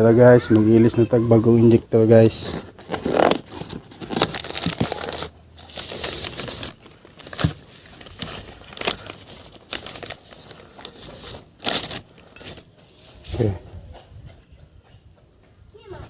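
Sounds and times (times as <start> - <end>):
packaging crinkling and tearing: 2.2 - 13.4.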